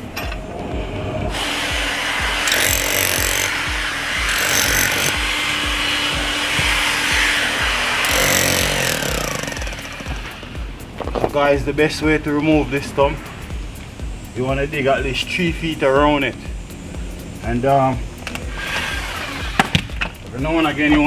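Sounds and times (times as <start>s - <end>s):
background music with steady beat: 0.0s - 21.0s
power saw cutting wood: 1.3s - 10.6s, 18.5s - 19.8s.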